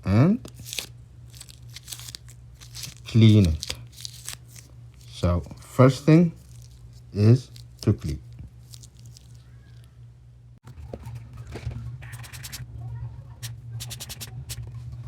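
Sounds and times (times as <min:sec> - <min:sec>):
steady low hum: 0:00.0 - 0:15.0
hand rubbing phone: 0:12.0 - 0:12.6, 0:13.4 - 0:14.6.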